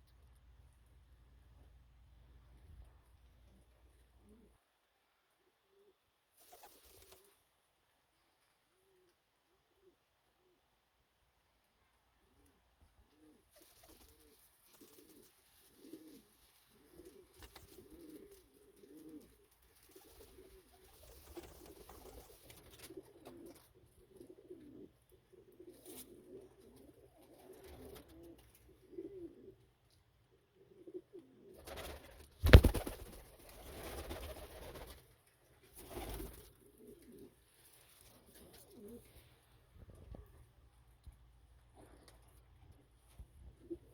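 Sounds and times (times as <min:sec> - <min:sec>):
pigeons cooing: 0:13.1 - 0:31.8, 0:35.8 - 0:37.4, 0:38.2 - 0:39.3
rustling: 0:31.8 - 0:40.4.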